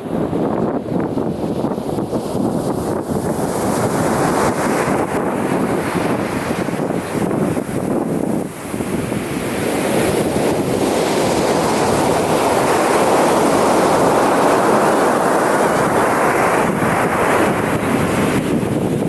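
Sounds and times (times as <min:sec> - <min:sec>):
ocean surf breaking: 0:00.0 - 0:19.0
wind buffeting microphone: 0:00.0 - 0:19.0.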